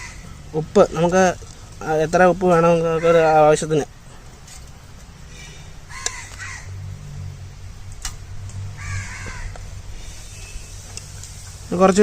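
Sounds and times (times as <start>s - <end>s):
crow cawing: 0.0s - 0.4s, 2.8s - 3.5s, 5.3s - 6.8s, 8.8s - 10.2s
low steady hum: 0.0s - 12.0s
sharp clicks: 7.9s - 8.6s.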